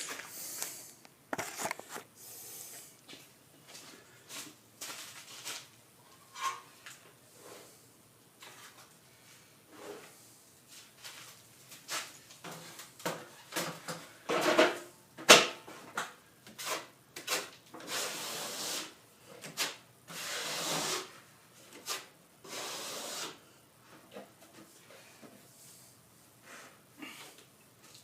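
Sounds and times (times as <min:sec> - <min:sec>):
trowel scraping plaster: 0:16.5 - 0:19.0, 0:19.6 - 0:21.2, 0:21.8 - 0:23.4.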